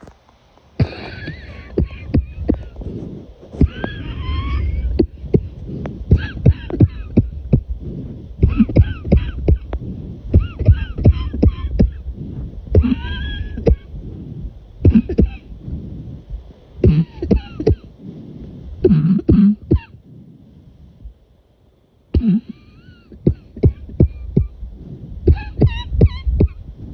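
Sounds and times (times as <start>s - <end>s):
person coughing: 0.8s - 2.8s, 3.6s - 7.4s, 8.4s - 9.7s, 10.4s - 12.0s, 14.8s - 15.5s, 16.8s - 17.9s, 18.9s - 20.0s, 22.2s - 24.5s.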